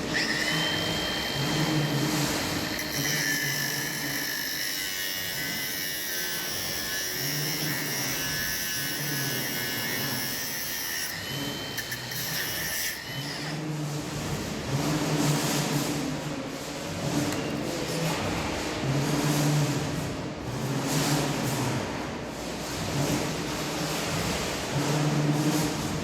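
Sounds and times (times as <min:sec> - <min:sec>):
small power tool whining: 0:00.0 - 0:13.4.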